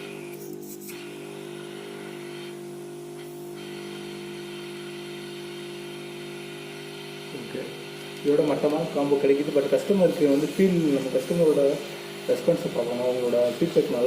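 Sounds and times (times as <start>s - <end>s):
electric machine hum: 0.0s - 14.0s.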